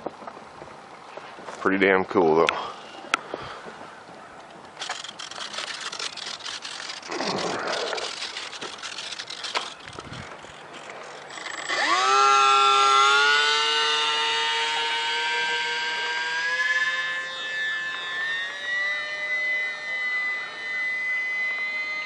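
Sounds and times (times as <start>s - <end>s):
electric motor and propeller whine: 2.6s - 22.0s
scattered clicks and knocks: 4.4s - 11.8s.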